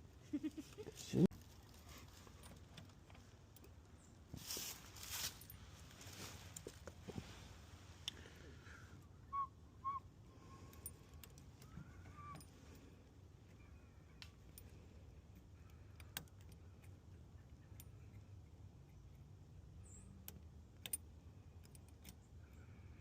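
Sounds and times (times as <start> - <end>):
lock-picking tools clicking: 10.7 - 12.8, 13.4 - 23.0.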